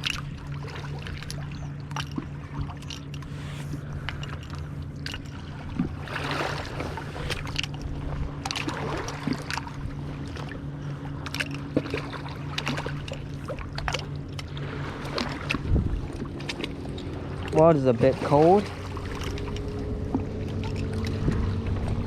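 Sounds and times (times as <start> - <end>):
steady low hum: 0.0 - 22.0
water sloshing around wading person: 0.0 - 22.0.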